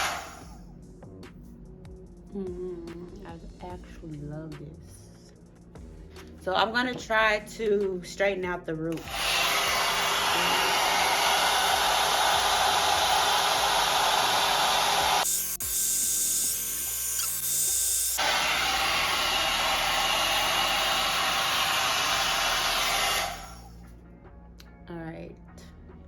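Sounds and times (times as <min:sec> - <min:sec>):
hot air brush running: 0:00.0 - 0:00.6, 0:08.9 - 0:23.8.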